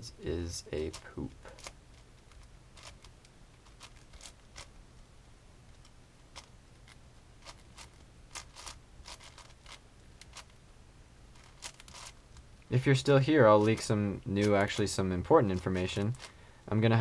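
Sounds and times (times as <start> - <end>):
puzzle cube clicking and scraping: 0.6 - 4.8, 5.7 - 10.6, 11.3 - 12.5, 13.4 - 16.4.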